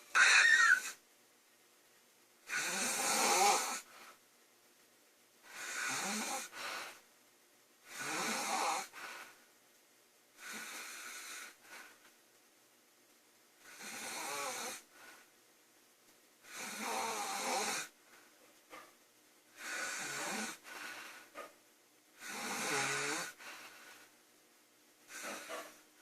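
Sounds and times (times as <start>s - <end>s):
quiet breaths: 2.4s - 26.0s
woman snoring: 2.5s - 3.9s, 5.5s - 7.0s, 7.8s - 9.3s, 10.4s - 11.9s, 13.6s - 14.9s, 16.4s - 18.0s, 19.6s - 20.9s, 22.2s - 23.5s.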